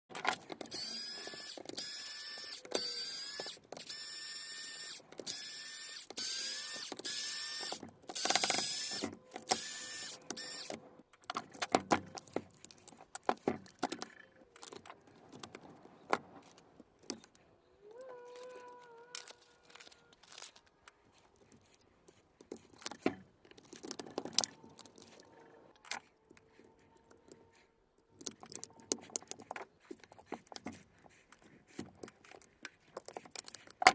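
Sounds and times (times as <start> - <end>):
small parts clicking and knocking: 0.1 - 33.9
cordless power tool motor bursts: 0.7 - 10.8.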